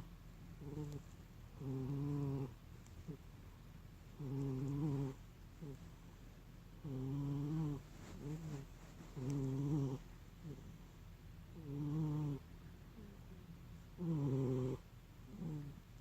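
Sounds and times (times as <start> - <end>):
cat snoring: 0.6 - 3.2, 4.2 - 5.8, 6.8 - 10.8, 11.5 - 12.4, 14.0 - 15.8.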